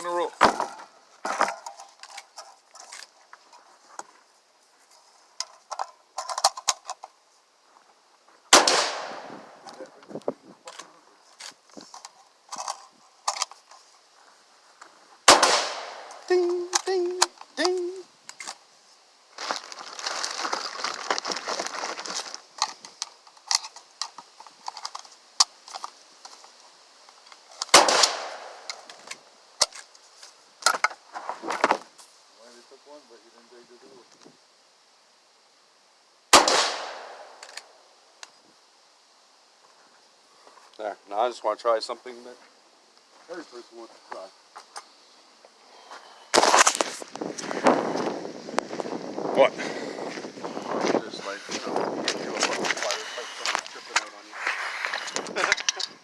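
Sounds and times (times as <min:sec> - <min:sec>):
shotgun shot: 0:08.5 - 0:09.6, 0:15.3 - 0:16.2, 0:27.7 - 0:28.7, 0:36.3 - 0:37.4.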